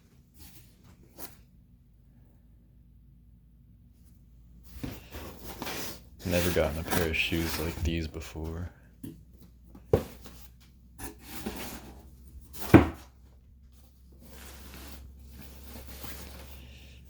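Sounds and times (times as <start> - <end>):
soft rustling: 4.0 - 10.8, 13.6 - 17.0
knocks on cardboard box: 12.7 - 13.0.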